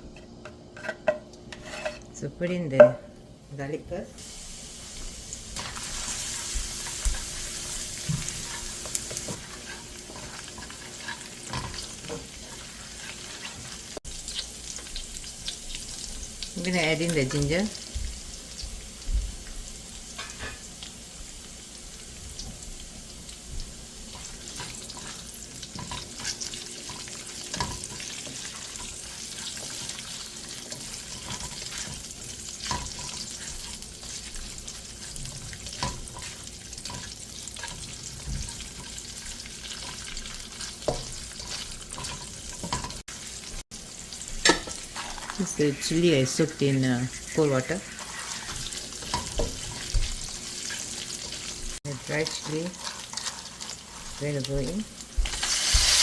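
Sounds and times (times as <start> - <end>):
garlic sizzling in hot oil: 4.2 - 56.0.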